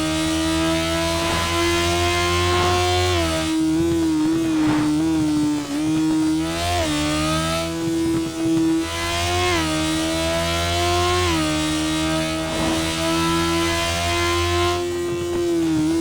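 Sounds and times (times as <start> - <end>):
motorcycle engine accelerating: 0.0 - 16.0.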